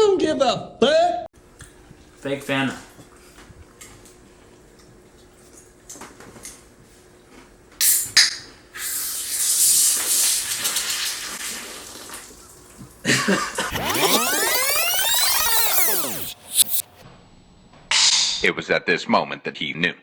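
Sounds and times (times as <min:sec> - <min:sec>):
fizzing hiss of carbonation: 0:07.8 - 0:12.8
soda foaming whoosh: 0:08.8 - 0:11.4.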